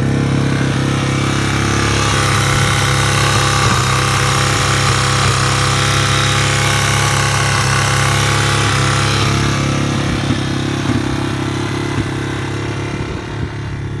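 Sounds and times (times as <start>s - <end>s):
engine ticking: 0.0s - 14.0s
motorcycle engine idling: 0.0s - 14.0s.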